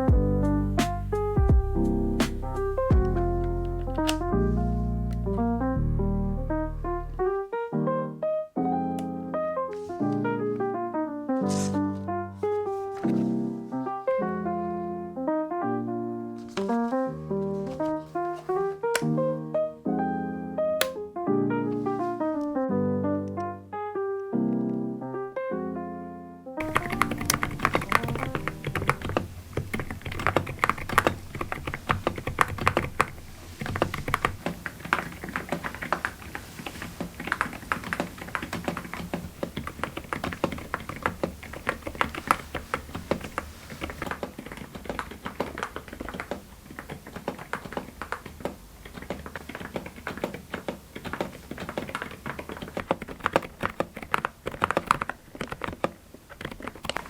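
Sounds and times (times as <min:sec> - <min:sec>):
mechanical keyboard typing: 0:02.2 - 0:05.5, 0:17.5 - 0:19.2, 0:26.6 - 0:57.0.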